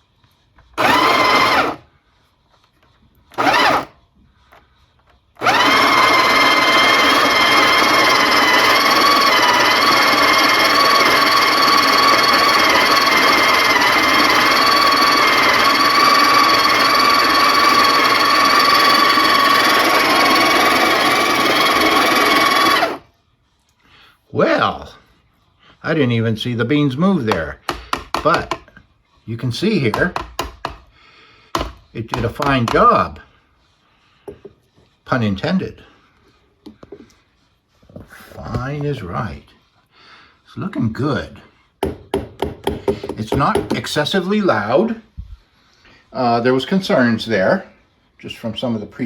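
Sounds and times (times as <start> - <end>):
coffee grinder motor whine: 0.8 - 1.8, 3.3 - 4.0, 5.4 - 23.0.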